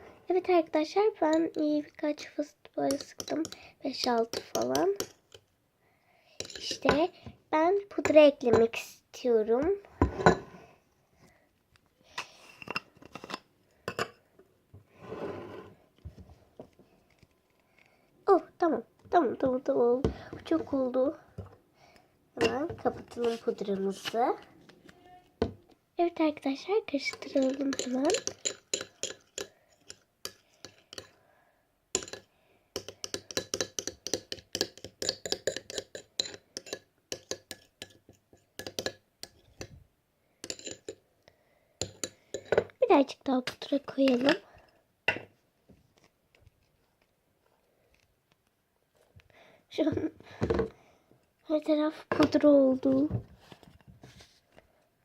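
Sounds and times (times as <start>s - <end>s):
spoon stirring and scraping bowl: 2.2s - 5.5s, 6.4s - 7.3s, 8.0s - 8.9s, 10.0s - 10.6s, 12.2s - 14.2s, 22.4s - 25.2s, 26.9s - 31.2s, 32.0s - 39.8s, 40.4s - 41.0s, 41.8s - 42.7s, 43.5s - 44.5s.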